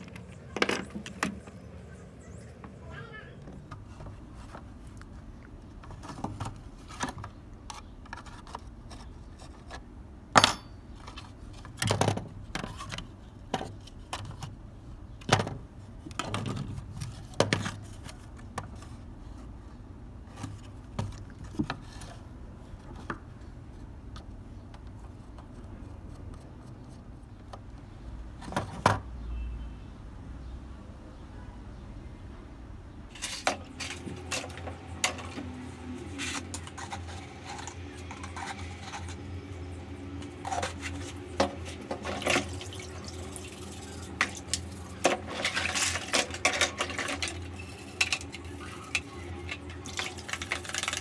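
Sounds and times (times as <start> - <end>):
small metal parts and tools clicking: 43.5 - 51.0.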